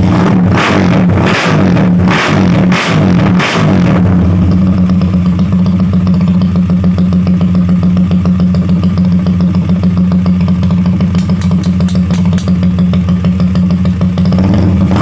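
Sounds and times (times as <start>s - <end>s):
motorcycle engine idling: 3.9s - 15.0s.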